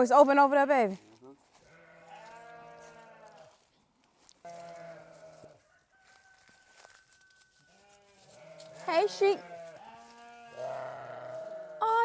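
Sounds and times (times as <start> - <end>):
lambs bleating: 1.6 - 3.6, 4.5 - 5.6, 7.8 - 12.0.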